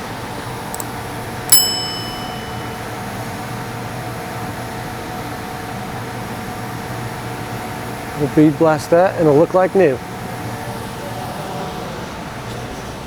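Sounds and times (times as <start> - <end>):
shop hum and fan noise: 0.0 - 13.0
metal part ringing: 1.5 - 3.0.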